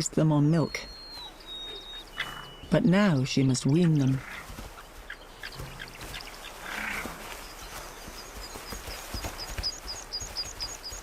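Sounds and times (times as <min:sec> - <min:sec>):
small bird chirping rapidly: 0:00.0 - 0:11.0.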